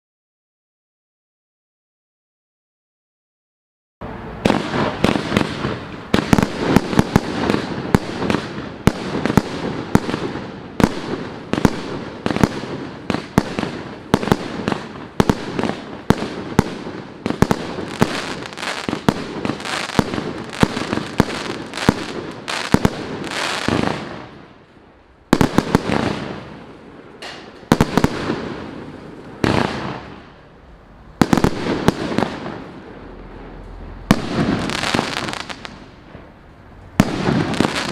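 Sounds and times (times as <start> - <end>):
firework crackling: 4.0 - 37.9
firework launches and bangs: 4.3 - 24.3, 31.2 - 32.9, 33.5 - 36.4, 37.0 - 37.9.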